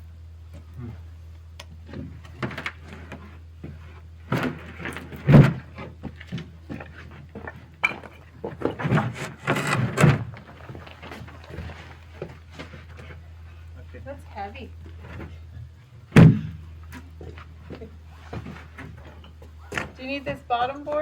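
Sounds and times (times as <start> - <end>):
steady low hum: 0.0 - 21.0
heavy thud: 3.7 - 12.8, 16.0 - 17.4
wooden boards knocking: 16.2 - 16.6.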